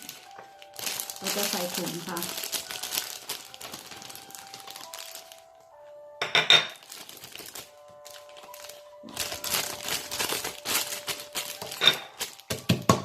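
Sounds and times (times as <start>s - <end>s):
plastic bag crinkling: 0.0s - 5.7s, 6.7s - 13.0s
background music: 0.0s - 13.0s
clatter of hard objects: 6.2s - 13.0s.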